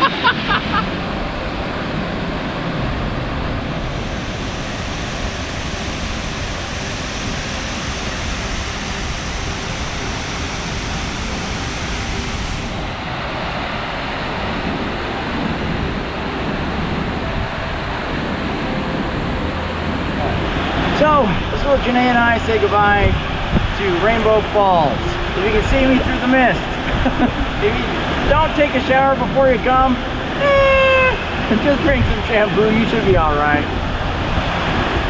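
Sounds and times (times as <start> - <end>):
waterfall rushing: 0.0 - 35.0
bright hiss: 3.8 - 23.1.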